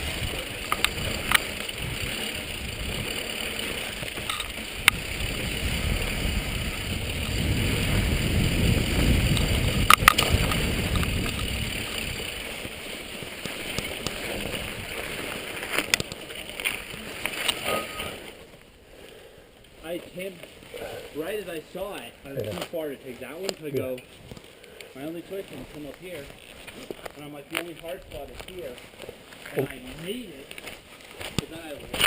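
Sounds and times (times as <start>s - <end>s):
bike knocks and rattles: 0.0s - 18.7s, 25.6s - 32.0s
tyres rumbling on trail: 0.0s - 32.0s
wind on microphone: 4.3s - 12.4s.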